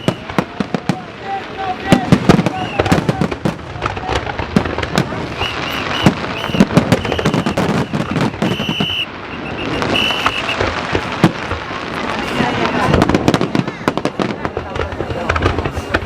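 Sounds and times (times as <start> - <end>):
fireworks bangs and crackling: 0.0 - 16.0
fireworks high whistling: 0.0 - 16.0.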